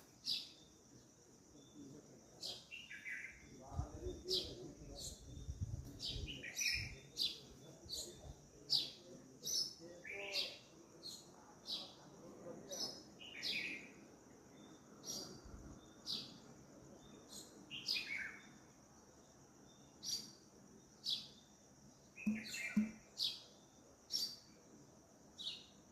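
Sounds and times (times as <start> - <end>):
faint high-pitched hiss: 0.0 - 25.9
birds chirping: 22.1 - 23.4.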